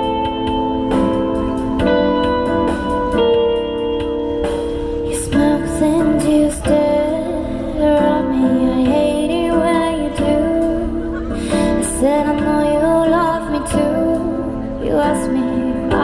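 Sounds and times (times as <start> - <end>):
backing music: 0.0 - 16.0
woman singing pop ballad: 5.1 - 16.0.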